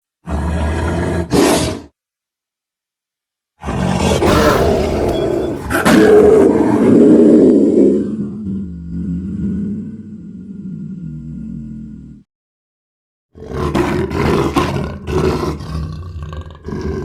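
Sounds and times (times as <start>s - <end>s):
monster roar: 4.2s - 6.0s.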